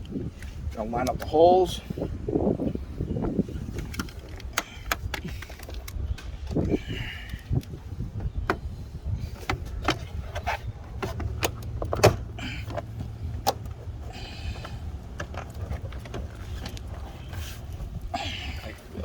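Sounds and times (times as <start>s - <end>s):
plastic panel clicks and knocks: 9.4s - 13.7s.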